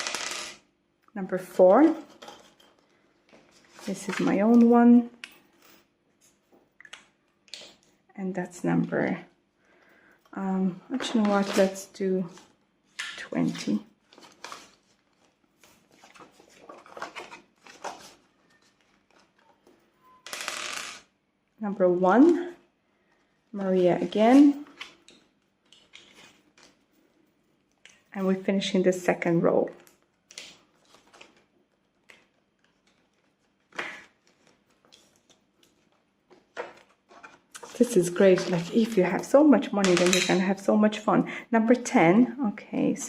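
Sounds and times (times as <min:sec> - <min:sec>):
banknotes and plastic rustling: 0:10.9 - 0:21.0, 0:22.1 - 0:27.6, 0:29.8 - 0:40.6.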